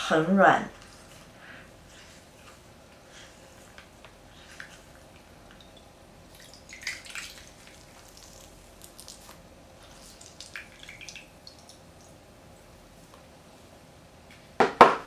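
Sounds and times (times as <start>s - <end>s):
sponge squishing in water: 0.9s - 12.2s.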